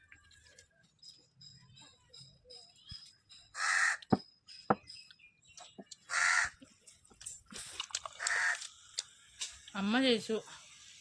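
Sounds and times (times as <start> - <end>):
crow cawing: 3.6 - 4.1, 6.1 - 6.6, 8.2 - 8.7.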